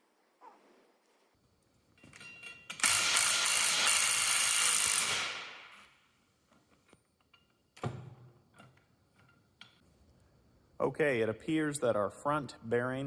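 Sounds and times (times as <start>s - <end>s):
power tool running: 2.7s - 5.4s.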